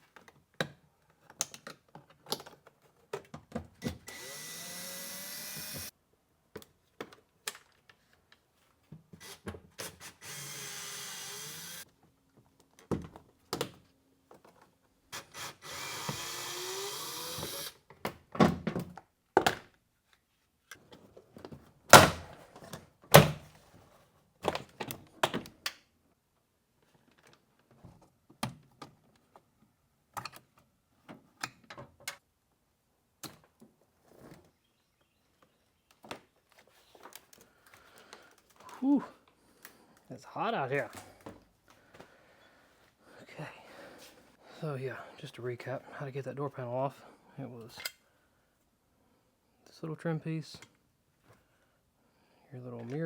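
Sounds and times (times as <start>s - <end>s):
cordless drill running: 3.8s - 5.9s, 9.2s - 11.8s, 15.2s - 17.8s.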